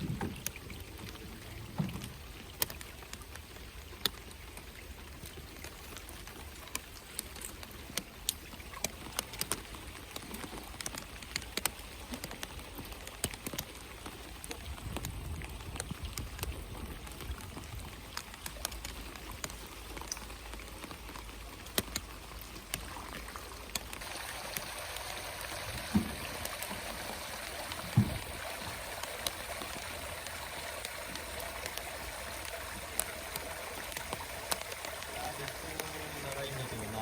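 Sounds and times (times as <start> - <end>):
rain hiss: 0.0 - 37.0
running water: 0.0 - 37.0
water drop ticks: 6.7 - 12.5, 27.6 - 37.0
dull knocks: 25.6 - 27.0, 27.8 - 28.7.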